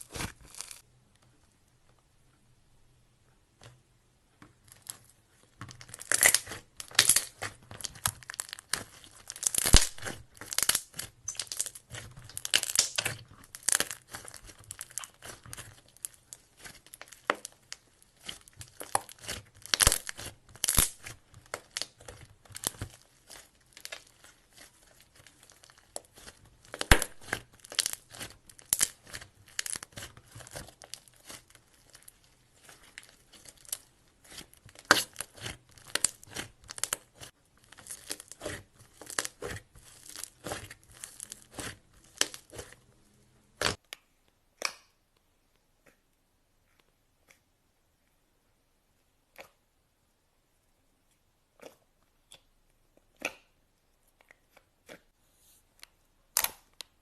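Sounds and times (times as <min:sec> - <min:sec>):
slime crackling and squelching: 0:00.0 - 0:00.9, 0:04.5 - 0:43.9.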